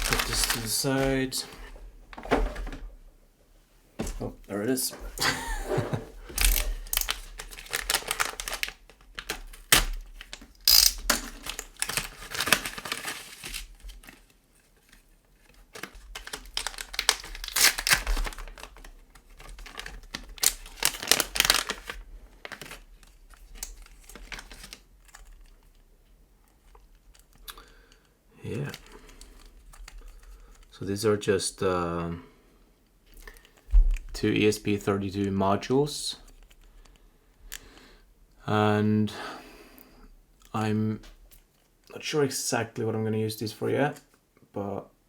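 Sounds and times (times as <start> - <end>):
packaging bag crinkling and tearing: 0.0 - 1.4, 6.2 - 14.9, 15.6 - 25.9.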